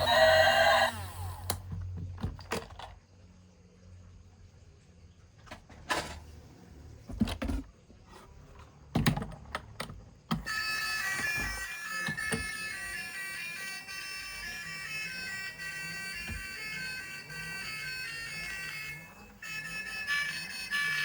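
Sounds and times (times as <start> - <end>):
plastic toys clicking and knocking: 0.0 - 3.0, 8.9 - 14.2.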